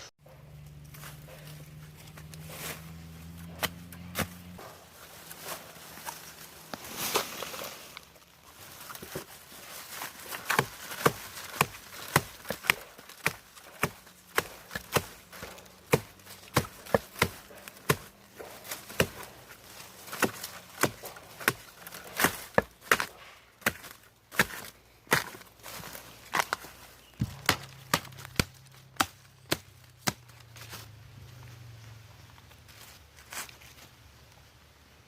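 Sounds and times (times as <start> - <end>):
blade chopping: 0.9 - 4.8, 10.2 - 26.6, 27.2 - 30.3.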